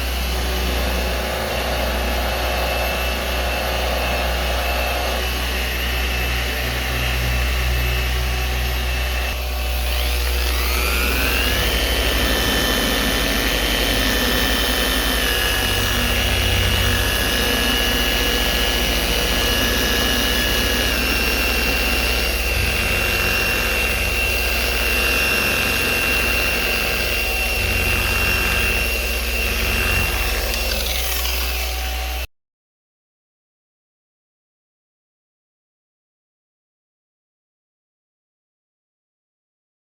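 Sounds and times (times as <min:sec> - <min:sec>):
electric polisher whine: 0:00.0 - 0:32.3.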